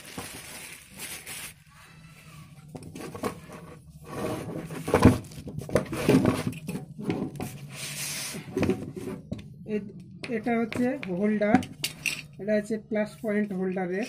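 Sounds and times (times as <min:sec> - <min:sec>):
packaging rustling: 0:00.0 - 0:01.7.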